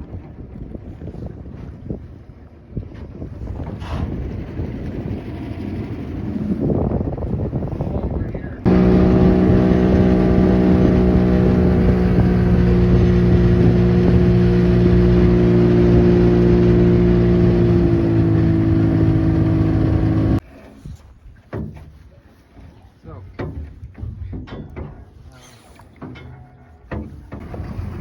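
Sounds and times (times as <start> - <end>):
boat motor running: 4.1 - 20.4.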